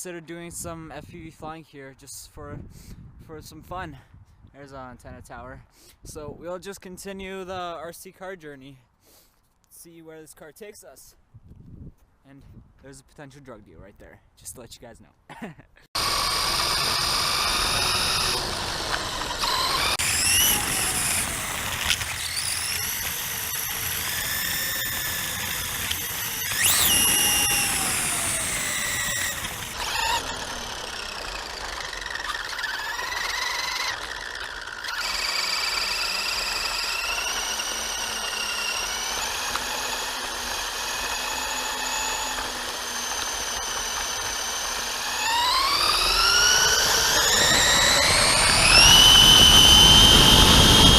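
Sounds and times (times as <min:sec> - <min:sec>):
rc truck motor whining: 0:16.0 - 0:50.9.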